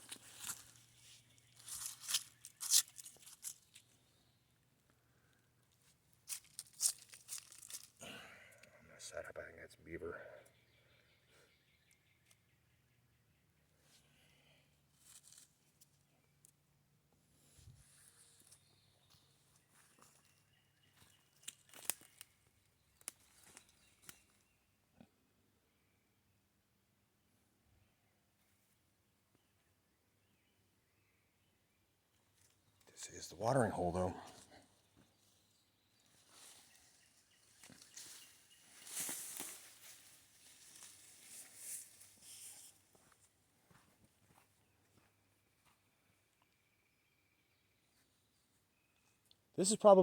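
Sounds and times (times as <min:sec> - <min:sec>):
footsteps crunching on ground: 0:00.0 - 0:03.6, 0:37.6 - 0:45.9.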